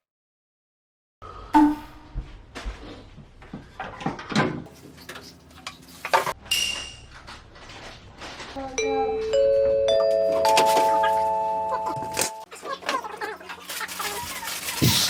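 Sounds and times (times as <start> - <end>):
kitchen items being handled: 4.7 - 12.5.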